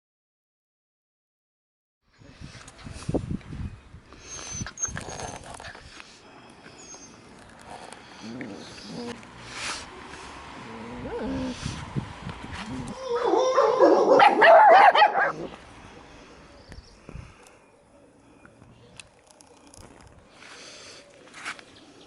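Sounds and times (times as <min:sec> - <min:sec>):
puppies yelping and whimpering: 0:12.9 - 0:14.4.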